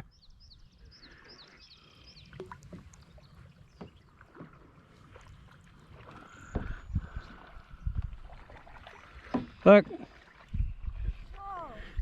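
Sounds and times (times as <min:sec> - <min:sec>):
bird chirping: 0:00.0 - 0:04.2
water and handling noises: 0:02.3 - 0:12.0
knocks on small boat: 0:06.5 - 0:06.8, 0:09.2 - 0:09.6.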